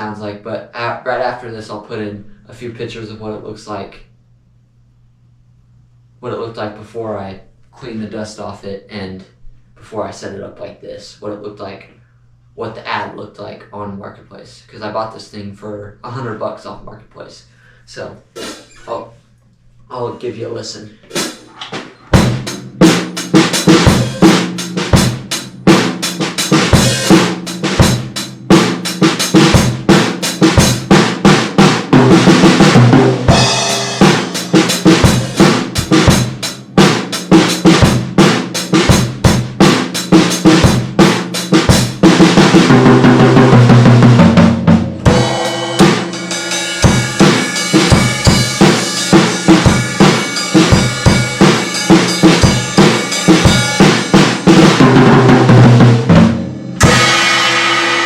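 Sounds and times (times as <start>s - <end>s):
drum kit playing beats and fills: 18.0s - 19.1s, 19.9s - 58.0s
cymbals ringing: 33.3s - 35.9s, 45.0s - 54.5s, 56.7s - 58.0s.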